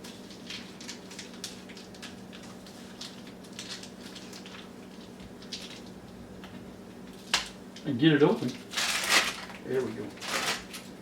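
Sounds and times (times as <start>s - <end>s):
food handling clicks and rustles: 0.0s - 11.0s.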